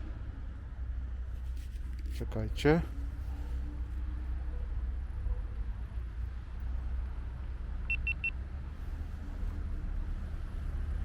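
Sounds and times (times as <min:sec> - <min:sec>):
camera beeps: 0:07.9 - 0:08.4.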